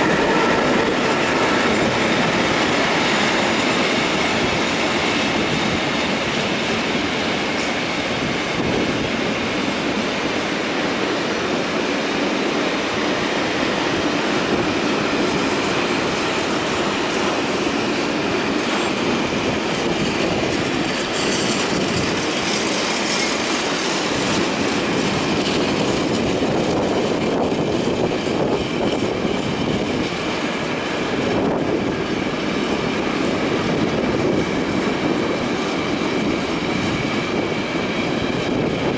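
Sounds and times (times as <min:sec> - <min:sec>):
train rolling on rails: 0:00.0 - 0:38.9
high wheel squeal: 0:20.9 - 0:24.3.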